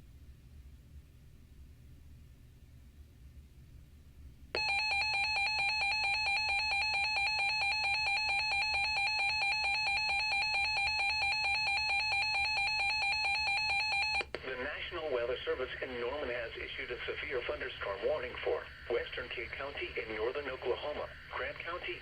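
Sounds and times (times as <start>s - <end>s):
pulsing electronic alarm tone: 4.6s - 14.2s.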